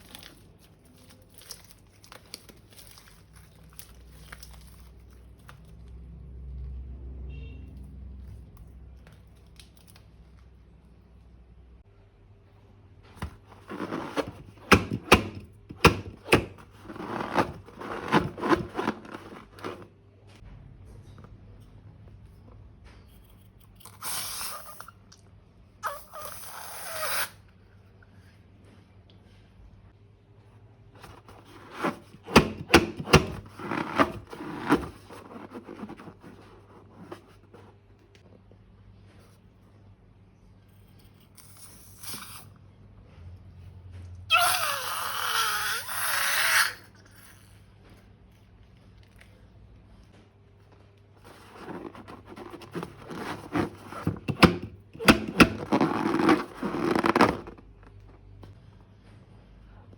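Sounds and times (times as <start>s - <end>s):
slime squeezed out hissing: 23.9s - 25.0s, 25.8s - 27.4s, 41.4s - 42.5s, 44.3s - 47.4s.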